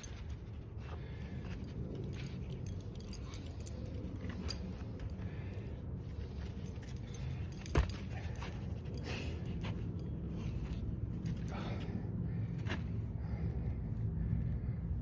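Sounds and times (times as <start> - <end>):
light metallic jingling: 0.0 - 0.5, 1.4 - 5.3, 6.2 - 11.9
steady low rumble: 0.0 - 15.0.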